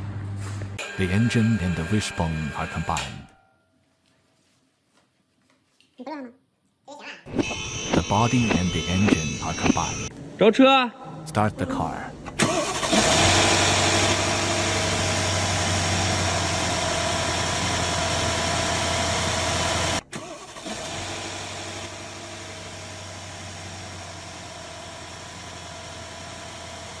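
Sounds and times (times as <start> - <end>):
car engine idling: 12.5 - 20.0.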